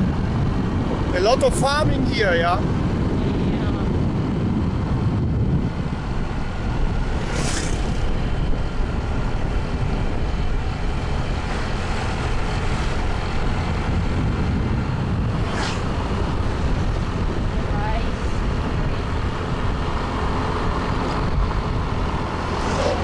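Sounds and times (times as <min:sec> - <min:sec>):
motorbike engine rumble: 0:00.0 - 0:23.0
wind on microphone: 0:00.0 - 0:23.0.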